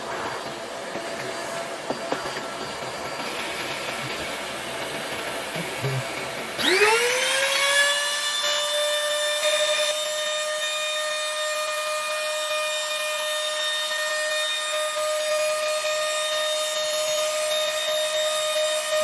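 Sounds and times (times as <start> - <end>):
electric router motor whining: 0.4 - 19.0.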